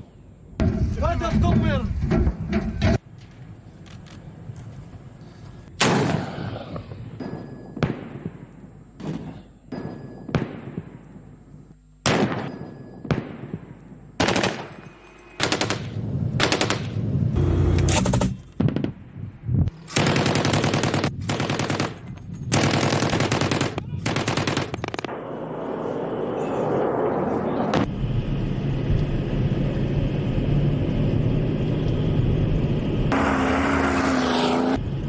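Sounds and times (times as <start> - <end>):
automatic gunfire bursts: 14.2 - 14.7, 15.4 - 16.9, 19.9 - 25.1.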